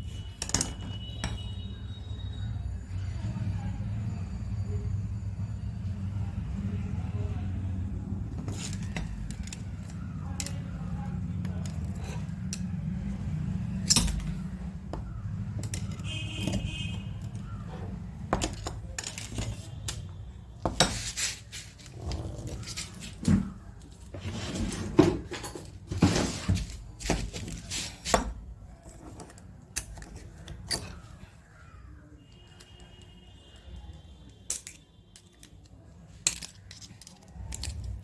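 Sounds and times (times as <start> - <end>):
metallic clinks and knocks: 0.3 - 1.7, 11.4 - 17.7, 18.3 - 31.2.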